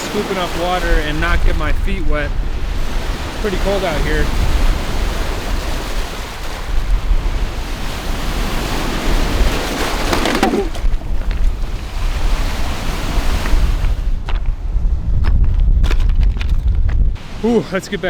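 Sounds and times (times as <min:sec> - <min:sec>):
waves washing on shore: 0:00.0 - 0:14.1, 0:17.2 - 0:18.0
wind buffeting microphone: 0:00.0 - 0:17.4
water splash: 0:08.1 - 0:12.9.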